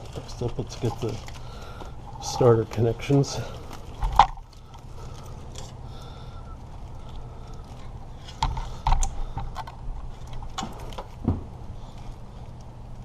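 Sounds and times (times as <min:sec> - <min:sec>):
steady low hum: 0:00.0 - 0:13.0
wiring connectors clicking: 0:08.3 - 0:11.2.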